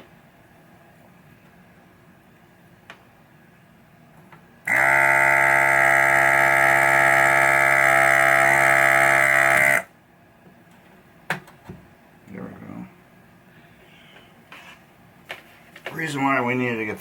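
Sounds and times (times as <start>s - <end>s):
desoldering vacuum pump buzzing: 4.6s - 9.9s.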